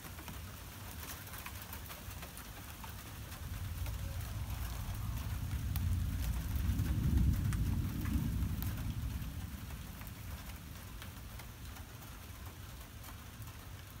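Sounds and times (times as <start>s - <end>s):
rain ticking: 0.0s - 14.0s
thunder rumbling: 3.1s - 13.4s.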